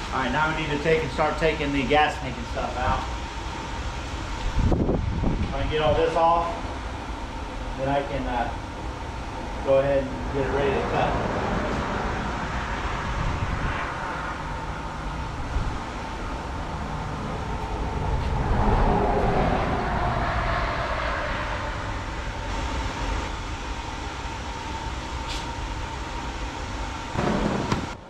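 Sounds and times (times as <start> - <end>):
motor traffic rumble: 0.0 - 28.0
vehicle passing by: 9.2 - 23.4.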